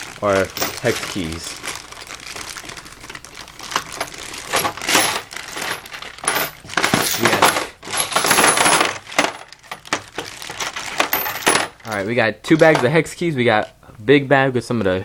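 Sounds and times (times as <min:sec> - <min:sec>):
small metal tools clinking: 0:00.0 - 0:02.8, 0:03.6 - 0:13.0
plastic bag rustling: 0:00.0 - 0:13.7.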